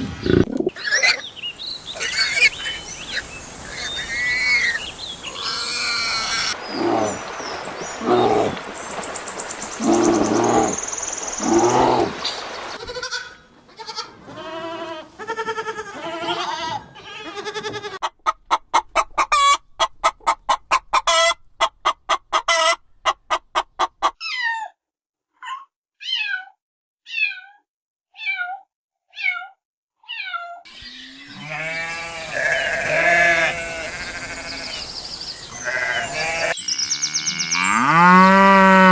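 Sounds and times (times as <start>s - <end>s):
drawn-out pitched animal calls: 1.9s - 7.2s, 30.8s - 34.8s, 35.5s - 38.9s.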